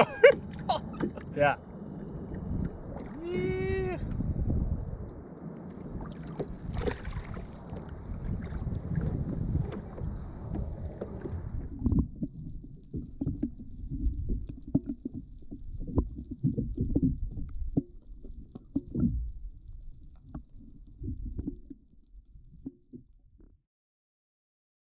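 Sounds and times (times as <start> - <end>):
water sloshing against kayak: 0.0 - 4.3, 5.0 - 21.8
wind on microphone: 0.0 - 17.8.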